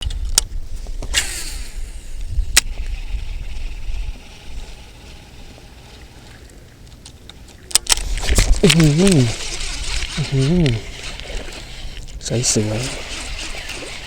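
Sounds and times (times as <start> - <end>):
wind buffeting microphone: 0.0 - 14.0
sharp clicks: 6.9 - 14.0.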